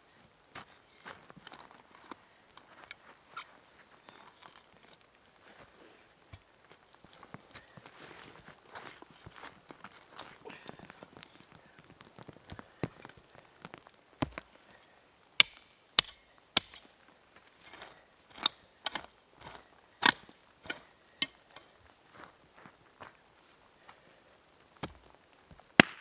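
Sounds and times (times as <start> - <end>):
wood being chopped: 14.2 - 14.5, 15.4 - 16.9, 17.7 - 21.7, 24.8 - 25.1, 25.8 - 26.0.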